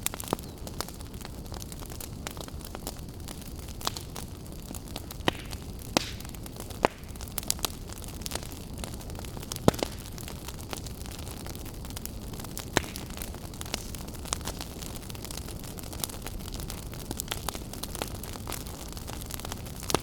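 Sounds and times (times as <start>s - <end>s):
wood fire crackling and popping: 0.0s - 20.0s.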